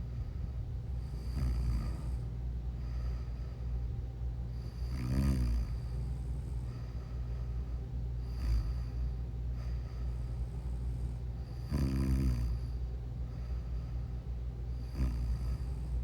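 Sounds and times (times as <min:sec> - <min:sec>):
faint breath: 0:00.0 - 0:11.8, 0:12.4 - 0:16.0
steady low hum: 0:00.0 - 0:16.0
person snoring: 0:01.1 - 0:02.2, 0:04.6 - 0:06.0, 0:08.2 - 0:09.0, 0:10.4 - 0:12.7, 0:14.8 - 0:16.0.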